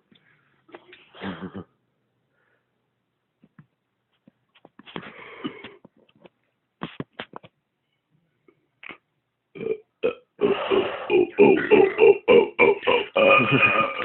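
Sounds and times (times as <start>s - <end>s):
man making throaty noises: 1.1s - 1.8s, 9.6s - 14.0s.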